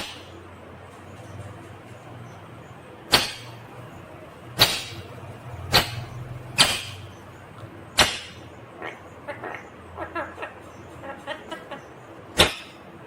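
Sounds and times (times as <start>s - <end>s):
parrot chattering calls: 8.0s - 12.9s.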